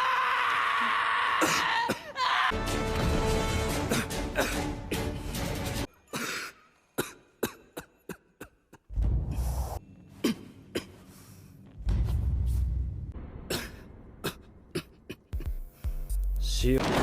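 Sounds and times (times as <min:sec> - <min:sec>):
young man coughing: 0:03.9 - 0:04.6, 0:06.1 - 0:08.9, 0:10.2 - 0:11.0, 0:13.5 - 0:15.6.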